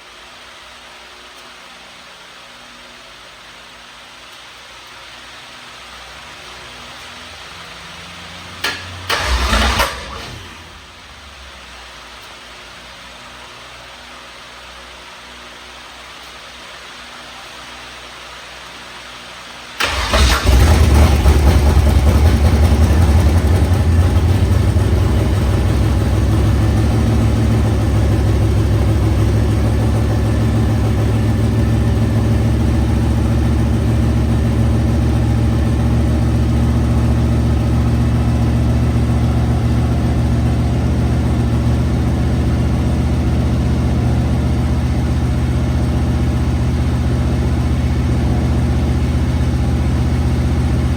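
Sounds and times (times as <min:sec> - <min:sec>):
car engine starting and idling: 0:06.0 - 0:13.0, 0:19.8 - 0:50.9.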